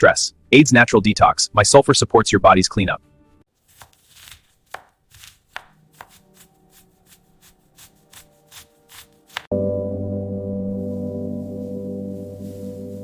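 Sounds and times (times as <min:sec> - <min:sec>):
knife chopping on cutting board: 0:03.7 - 0:06.5
faint sustained tones: 0:09.5 - 0:13.0
gong ringing: 0:09.5 - 0:13.0.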